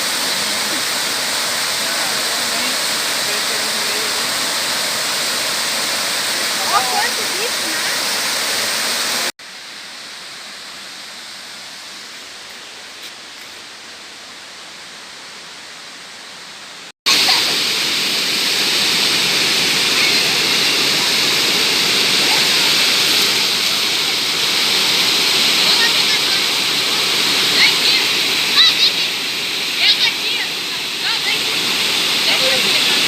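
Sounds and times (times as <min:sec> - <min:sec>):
waterfall rushing: 0:00.0 - 0:33.0.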